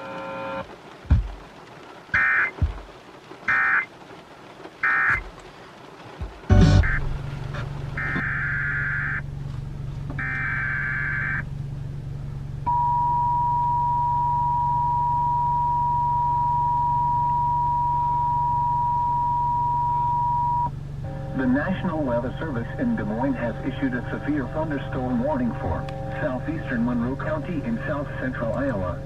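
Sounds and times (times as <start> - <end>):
low hum: 6.4 - 29.0
buzzy digital data bursts: 6.5 - 7.1
two-tone attention signal: 12.7 - 22.2.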